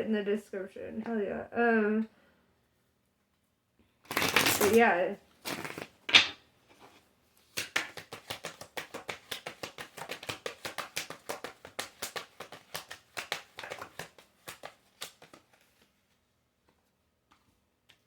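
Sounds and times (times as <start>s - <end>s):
cards being shuffled: 4.1s - 18.0s.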